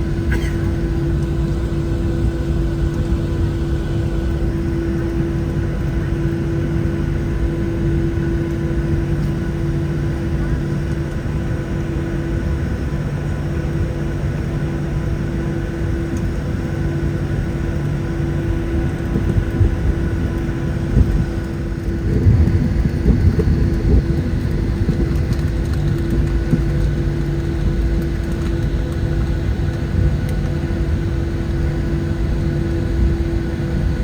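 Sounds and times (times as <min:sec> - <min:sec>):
jet engine hum in cabin: 0:00.0 - 0:34.0
low rumble: 0:19.2 - 0:34.0.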